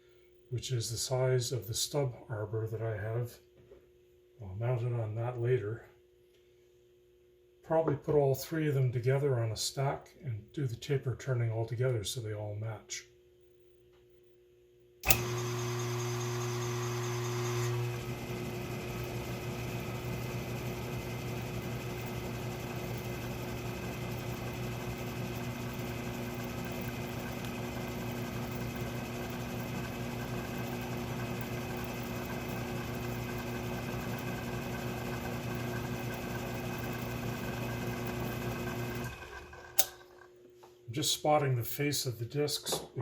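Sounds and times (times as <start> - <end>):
metal lathe motor hum: 15.0 - 40.3.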